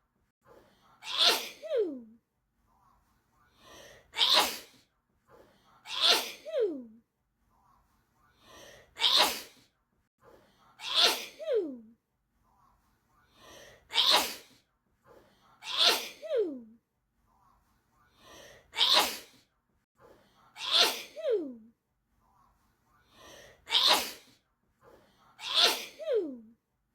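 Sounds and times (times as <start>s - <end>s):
person sneezing: 1.0s - 2.0s, 4.2s - 4.8s, 5.9s - 6.8s, 9.0s - 9.6s, 10.8s - 11.7s, 13.9s - 14.6s, 15.6s - 16.5s, 18.8s - 19.4s, 20.6s - 21.5s, 23.7s - 24.4s, 25.4s - 26.4s.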